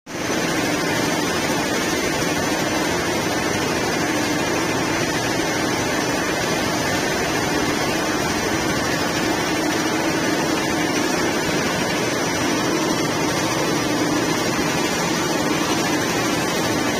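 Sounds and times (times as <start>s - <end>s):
machinery running with low hum: 0.2s - 16.9s.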